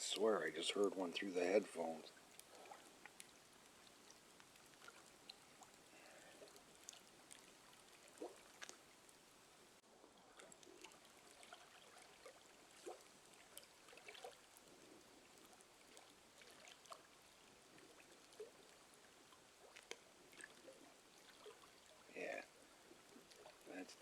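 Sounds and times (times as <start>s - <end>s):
low hiss: 0.0s - 24.0s
small clicks and pops: 2.1s - 9.2s, 17.7s - 20.8s.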